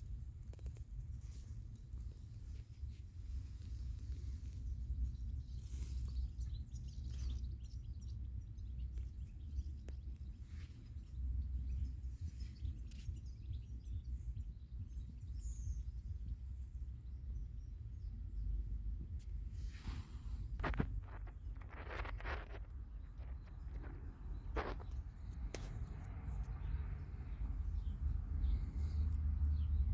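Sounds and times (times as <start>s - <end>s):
faint bird chirps: 2.4s - 25.8s
low rumble: 18.6s - 29.9s
soft hisses: 19.4s - 21.5s.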